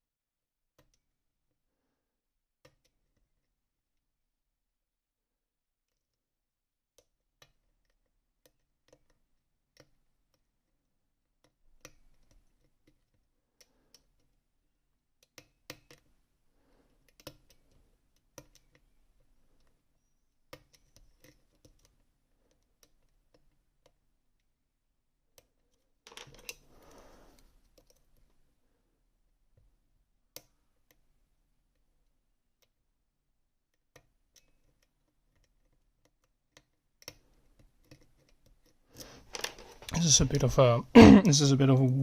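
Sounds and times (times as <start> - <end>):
clicks and taps of metal parts: 25.4 - 28.3, 33.9 - 39.9.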